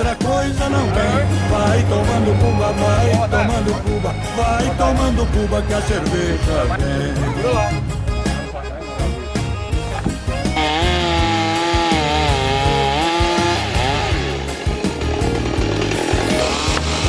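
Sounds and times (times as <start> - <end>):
chainsaw cutting wood: 10.0 - 17.0.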